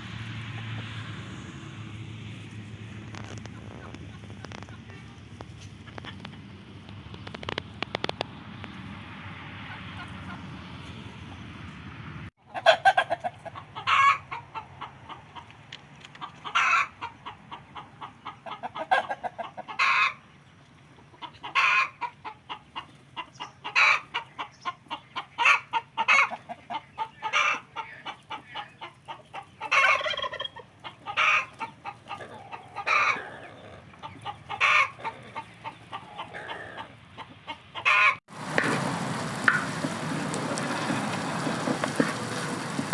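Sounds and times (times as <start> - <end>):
chickens clucking: 3.0 - 8.1, 9.6 - 11.4, 12.4 - 42.9
chicken squawks: 12.5 - 15.2, 16.4 - 20.2, 21.1 - 38.2.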